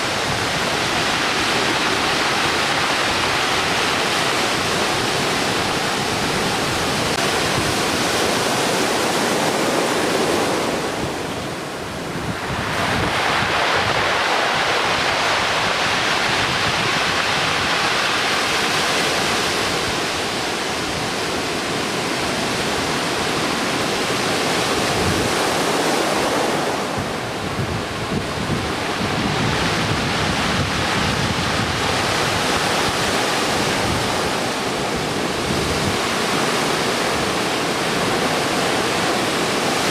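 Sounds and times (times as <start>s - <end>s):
surf waves breaking: 0.0s - 39.9s
wind buffeting microphone: 0.0s - 39.9s.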